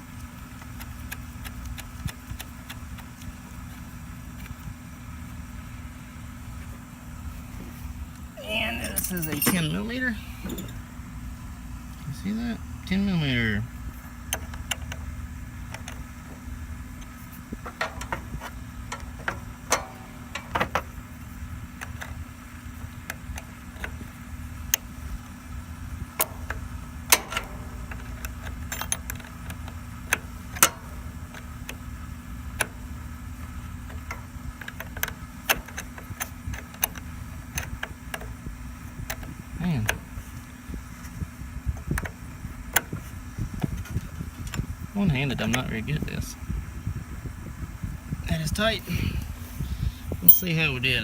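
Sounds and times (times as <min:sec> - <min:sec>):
low hum: 0:03.2 - 0:34.3, 0:46.3 - 0:51.0
wrench clicking on a nut: 0:26.2 - 0:31.8, 0:33.9 - 0:38.3.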